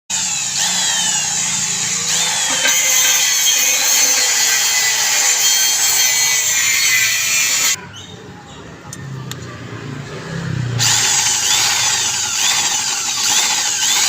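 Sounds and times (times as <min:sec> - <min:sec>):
power drill grinding into metal: 0:00.1 - 0:07.8, 0:10.8 - 0:14.0.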